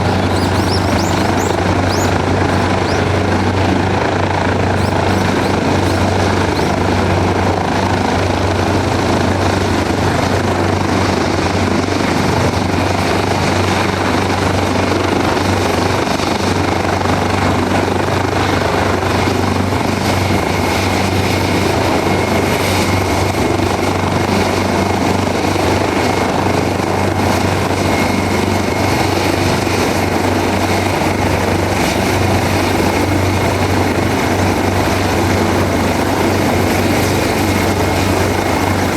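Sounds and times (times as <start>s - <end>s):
faint high whine: 0.0s - 3.4s, 4.7s - 7.0s
turbine and airflow noise: 0.0s - 9.0s
helicopter rotor beat: 0.0s - 38.9s.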